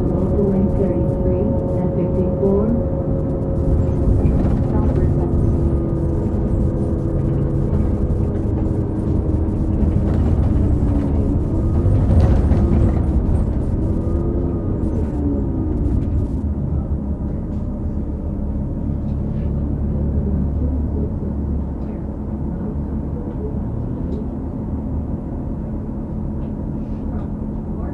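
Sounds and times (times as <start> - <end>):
transmission whine: 0.0 - 17.5
bus drivetrain rumble: 0.0 - 27.9.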